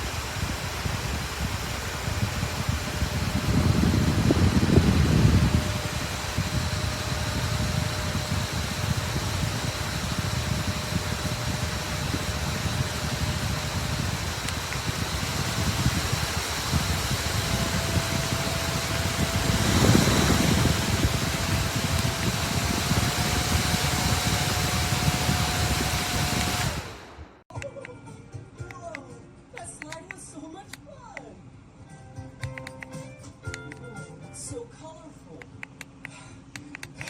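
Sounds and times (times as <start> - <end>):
handheld fan running: 0.0 - 27.6, 35.3 - 37.0.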